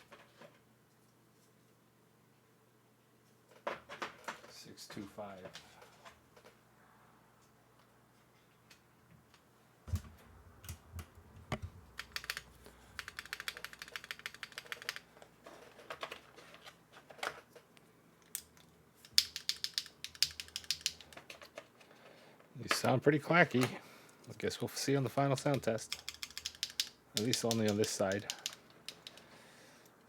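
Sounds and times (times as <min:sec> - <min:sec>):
mechanical keyboard typing: 0:11.9 - 0:15.1, 0:19.0 - 0:21.2, 0:25.5 - 0:29.2.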